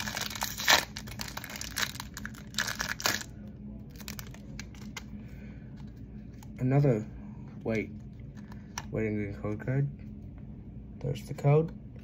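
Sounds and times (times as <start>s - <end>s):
foil wrapper crinkling and tearing: 0.0s - 3.3s, 3.9s - 5.1s.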